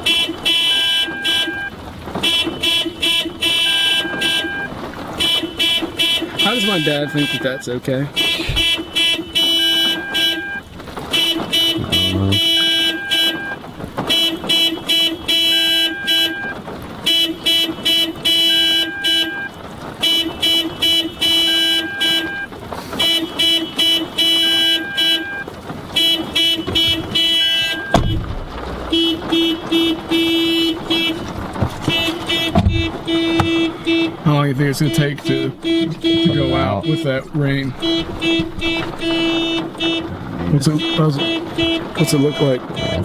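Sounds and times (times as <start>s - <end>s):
car alarm horn blasts: 0.0s - 43.0s
thump: 27.9s - 29.0s, 31.4s - 33.6s.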